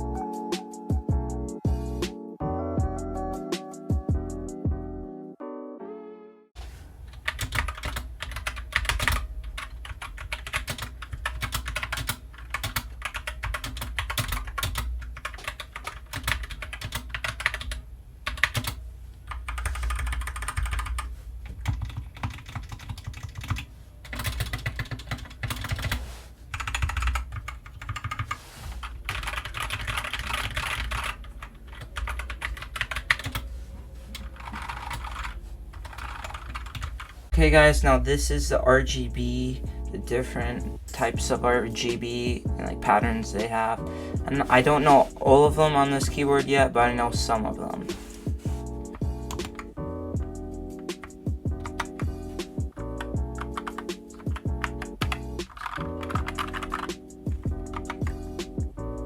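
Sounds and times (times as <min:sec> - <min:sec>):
mechanical keyboard typing: 0:07.1 - 0:33.4, 0:34.2 - 0:37.1, 0:49.3 - 0:49.7, 0:51.0 - 0:52.1, 0:53.0 - 0:58.2.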